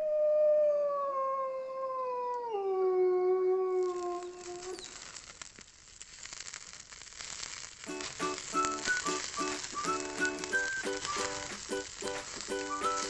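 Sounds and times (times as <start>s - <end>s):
long howl sliding down: 0.0s - 4.8s
faint crackling hiss: 0.0s - 13.0s.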